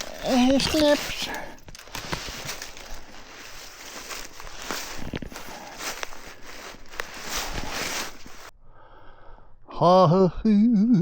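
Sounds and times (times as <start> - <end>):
footsteps on forest floor: 0.0 - 8.5.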